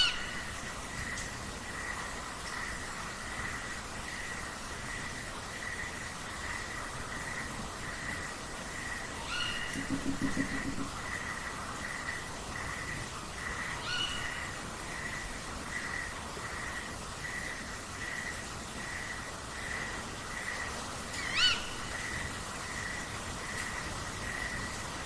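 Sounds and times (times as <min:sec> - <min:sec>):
owl calls: 0:09.2 - 0:11.0, 0:13.8 - 0:14.4, 0:21.2 - 0:21.9.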